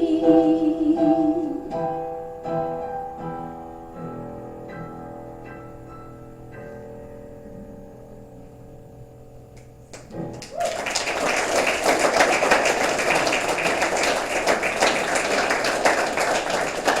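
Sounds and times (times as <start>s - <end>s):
audience applause: 9.9s - 17.0s.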